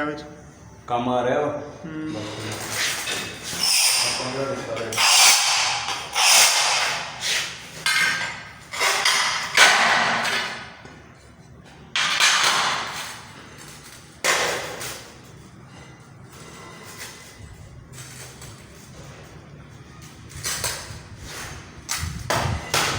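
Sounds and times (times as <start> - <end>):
cutting tools on ceramic tiles: 2.4 - 9.2.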